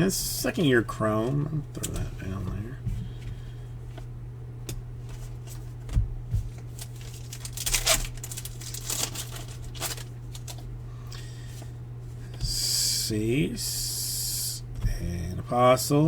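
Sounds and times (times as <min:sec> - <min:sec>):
low electrical hum: 0:00.0 - 0:16.0
foil wrapper tearing and crinkling: 0:06.5 - 0:10.7.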